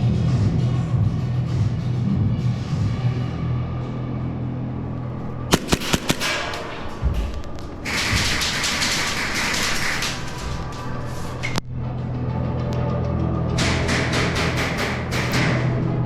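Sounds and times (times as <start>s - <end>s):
airsoft pistol shots: 5.1s - 8.1s.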